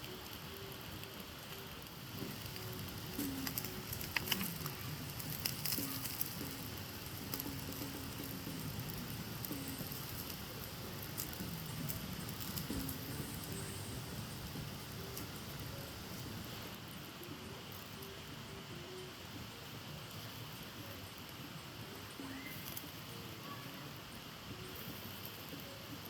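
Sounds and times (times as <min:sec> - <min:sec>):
cooking fire crackling and popping: 0:00.0 - 0:26.0
sizzling hiss: 0:00.0 - 0:26.0.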